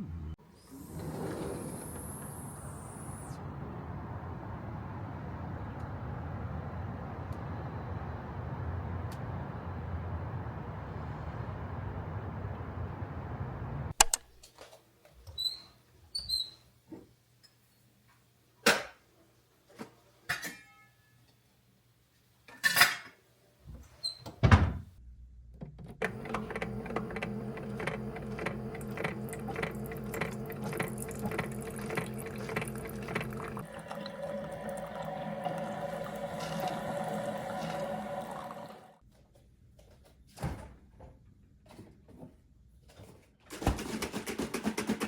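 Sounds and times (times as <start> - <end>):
knocks clicks and clatter: 25.6 - 33.6.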